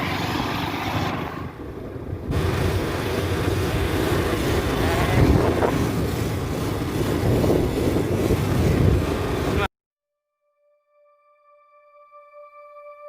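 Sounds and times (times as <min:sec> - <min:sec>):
vehicle running: 0:00.0 - 0:09.7
wind rushing over microphone: 0:00.0 - 0:09.7.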